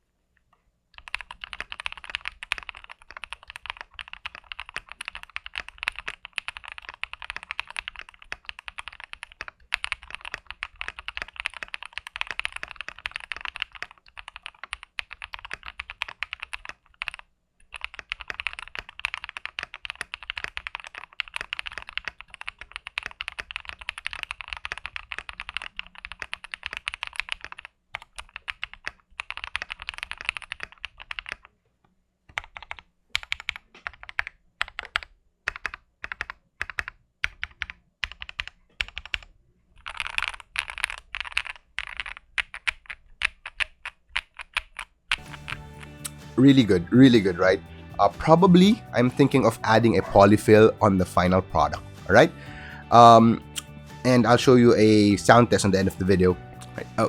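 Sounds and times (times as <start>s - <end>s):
fast typing on mechanical keyboard: 1.0s - 31.5s, 32.3s - 45.9s.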